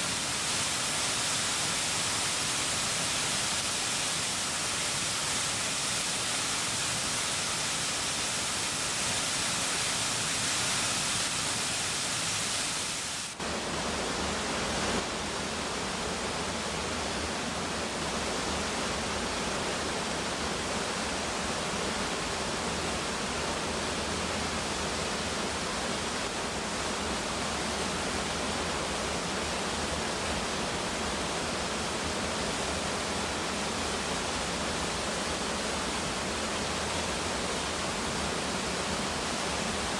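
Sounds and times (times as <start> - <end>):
waterfall rushing: 0.0 - 17.8.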